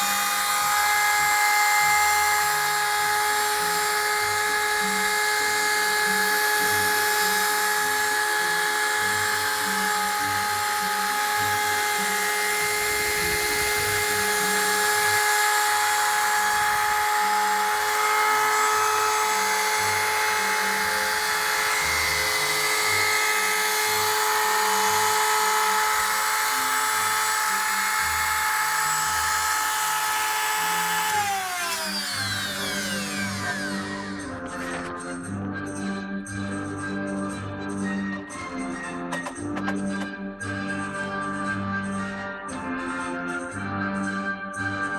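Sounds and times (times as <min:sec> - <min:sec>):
rotary tool high whine: 0:00.0 - 0:35.0.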